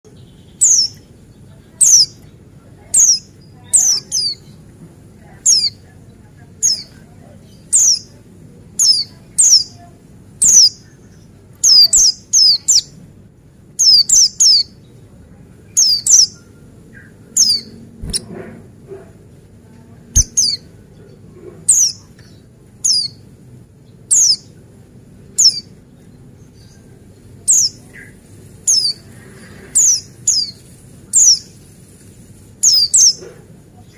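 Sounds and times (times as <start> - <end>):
bird chirping: 0.0 - 4.6, 5.4 - 5.8, 6.6 - 8.2, 8.8 - 9.8, 10.4 - 13.0, 13.8 - 15.0, 15.7 - 18.3, 20.2 - 24.6, 25.3 - 29.0, 29.8 - 31.6, 32.6 - 33.2.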